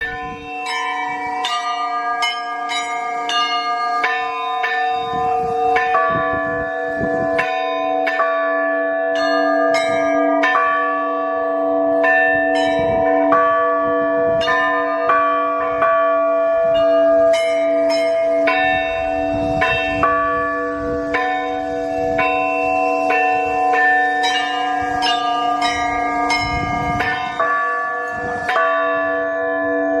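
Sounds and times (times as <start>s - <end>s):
large church bells ringing: 0.0s - 30.0s
small church bells striking quickly: 0.0s - 30.0s.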